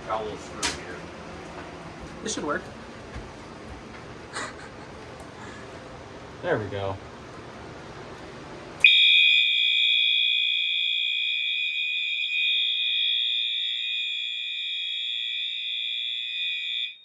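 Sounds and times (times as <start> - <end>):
fire alarm high-pitched tone: 8.8 - 17.0.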